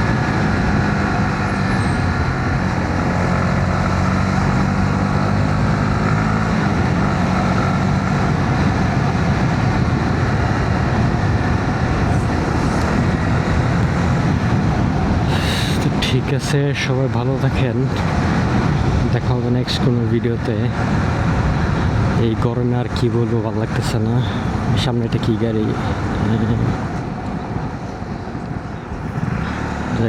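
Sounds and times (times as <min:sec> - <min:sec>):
motorcycle engine running: 0:00.0 - 0:15.8
wind and road noise: 0:00.0 - 0:30.0.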